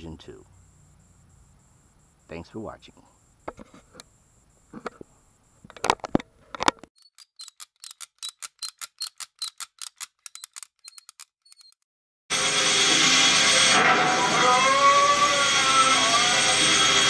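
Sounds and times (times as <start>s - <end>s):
loud noisy sound: 12.3s - 17.0s.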